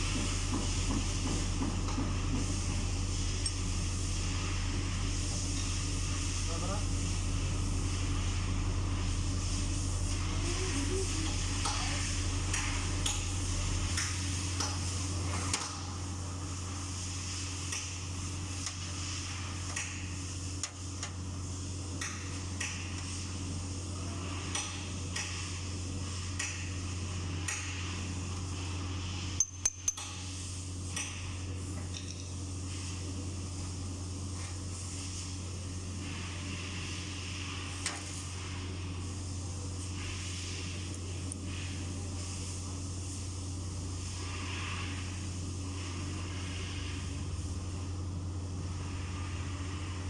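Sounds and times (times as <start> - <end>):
steady low hum: 0.0 - 50.0
metallic clinks of hand tools: 29.4 - 30.2.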